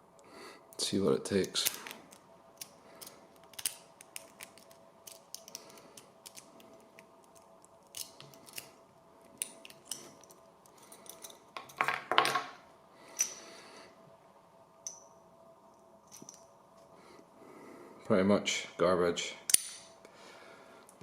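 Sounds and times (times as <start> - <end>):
lock pick clicking and scraping: 2.6 - 6.5.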